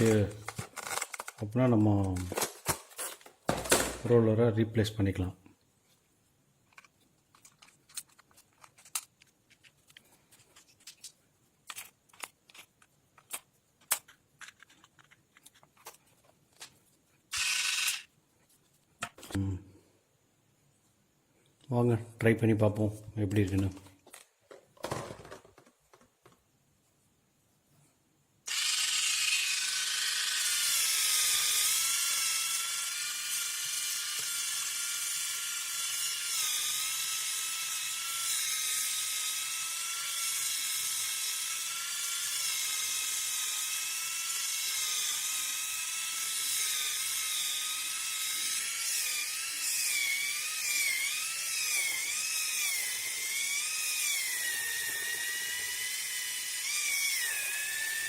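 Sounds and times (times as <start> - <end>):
electric callus remover whining: 17.3 - 18.1, 28.5 - 58.0.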